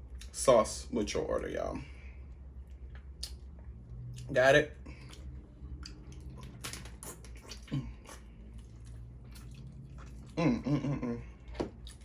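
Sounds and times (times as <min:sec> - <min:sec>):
low steady hum: 0:00.0 - 0:12.0
wet chewing sounds: 0:02.3 - 0:10.7, 0:11.3 - 0:12.0.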